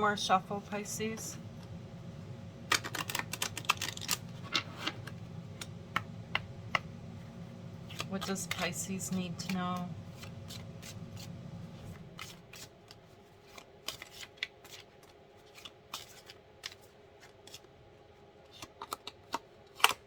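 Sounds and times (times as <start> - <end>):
cards being shuffled: 2.7 - 5.7, 7.8 - 17.7.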